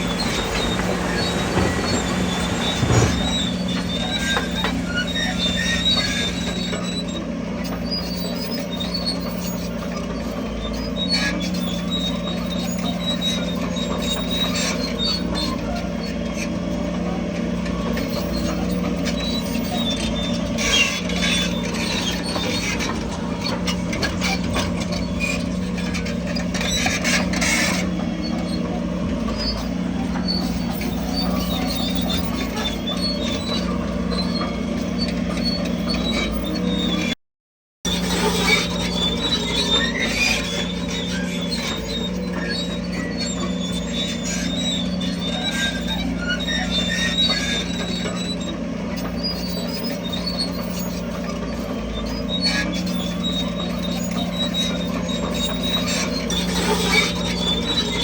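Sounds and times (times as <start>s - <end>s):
short metal clanks: 0.0s - 6.8s
bulldozer diesel engine running: 0.0s - 37.2s, 37.8s - 58.0s
steel tracks squealing: 0.0s - 37.2s, 37.9s - 58.0s.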